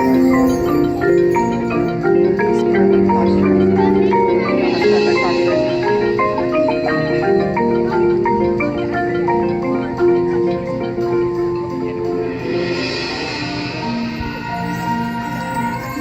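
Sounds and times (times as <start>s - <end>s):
held pitched notes: 0.0s - 16.0s
marimba and xylophone notes: 0.0s - 16.0s.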